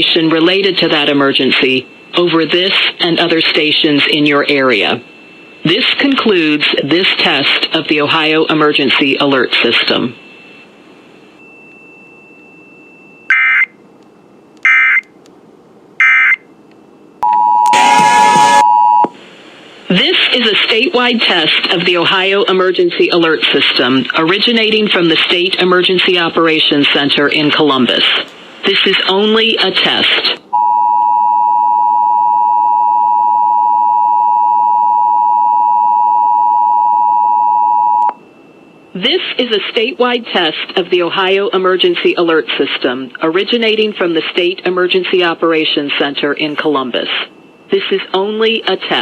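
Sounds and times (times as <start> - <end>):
steady dual tone alert signal: 0.0 - 7.6, 9.0 - 15.1, 16.0 - 16.5, 17.2 - 19.1
two-tone attention signal: 17.2 - 19.1.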